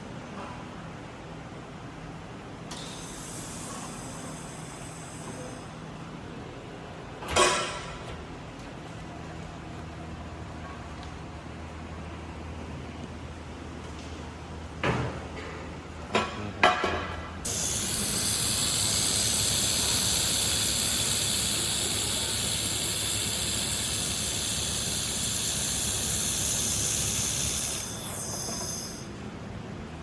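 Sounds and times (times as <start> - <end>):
laser welding hiss: 17.5 - 29.1.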